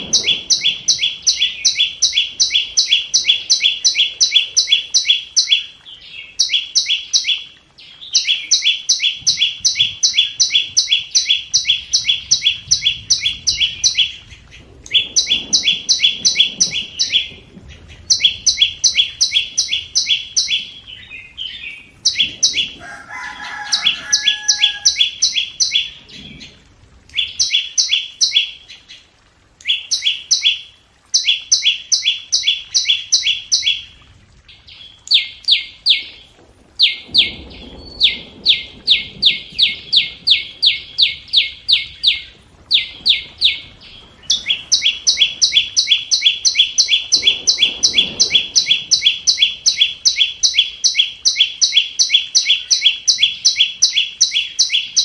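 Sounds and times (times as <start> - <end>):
lower whistled call: 0.0 - 5.7, 44.3 - 55.0.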